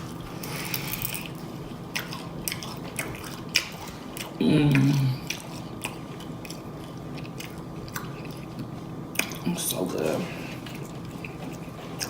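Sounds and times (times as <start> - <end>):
wet chewing smacks: 0.0 - 12.0.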